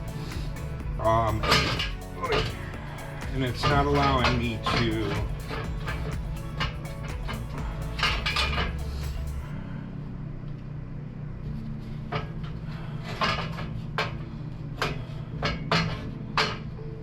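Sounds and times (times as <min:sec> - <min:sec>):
metal clanks and knocks: 0:00.0 - 0:09.4.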